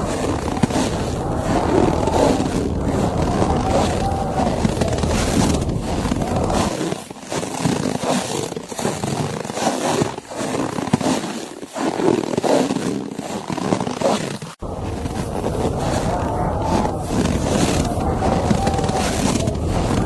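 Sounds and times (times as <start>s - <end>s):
low rumble: 0.0s - 6.7s, 14.6s - 20.0s
blizzard wind rushing: 0.0s - 6.8s, 14.6s - 20.0s
crunching snow: 0.0s - 20.0s.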